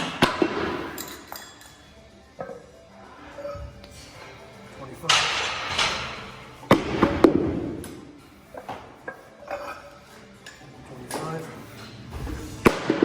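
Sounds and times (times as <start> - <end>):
weight plates clanking: 3.3 - 13.0.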